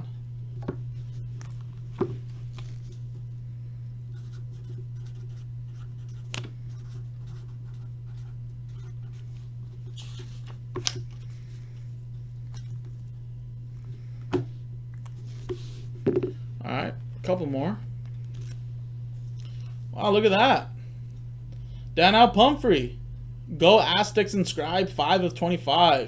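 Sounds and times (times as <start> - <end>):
steady low hum: 0.0 - 26.0
trading cards being handled: 1.0 - 3.2, 4.2 - 13.2, 15.0 - 16.4, 18.1 - 18.6.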